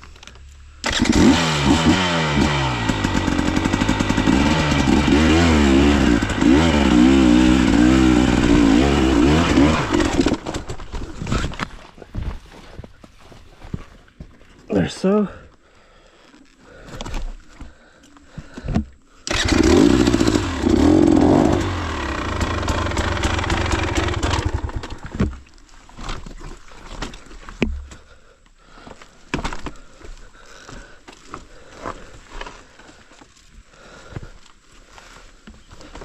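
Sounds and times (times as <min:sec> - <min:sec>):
dirt bike engine revving: 0:00.8 - 0:11.4, 0:19.3 - 0:25.2.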